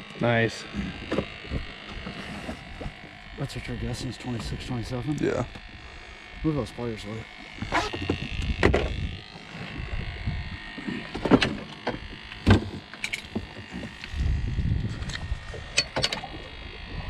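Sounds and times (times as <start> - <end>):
wind and boat rumble: 7.6 - 9.2, 13.3 - 17.0
knocks and thumps on boat deck: 7.8 - 8.9.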